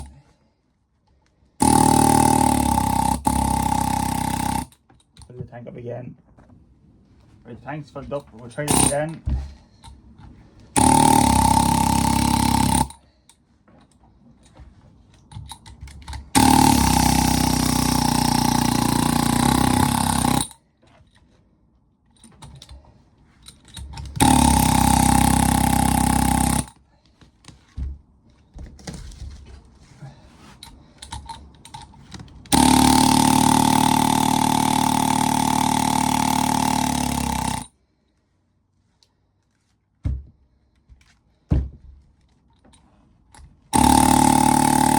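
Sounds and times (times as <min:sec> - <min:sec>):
pneumatic air hammer buzzing: 0:01.6 - 0:04.8, 0:08.6 - 0:09.6, 0:10.7 - 0:13.0, 0:15.3 - 0:20.6, 0:23.5 - 0:26.8, 0:31.0 - 0:37.7, 0:43.7 - 0:44.9.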